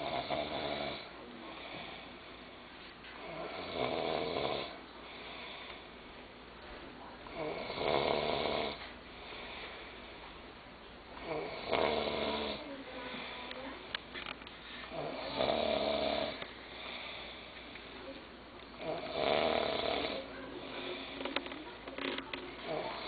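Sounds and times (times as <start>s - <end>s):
boy snoring: 0.0s - 2.0s, 3.2s - 4.8s, 7.3s - 8.8s, 11.2s - 13.4s, 14.9s - 17.2s, 18.8s - 21.5s, 22.6s - 23.0s
quiet breathing: 0.0s - 23.0s.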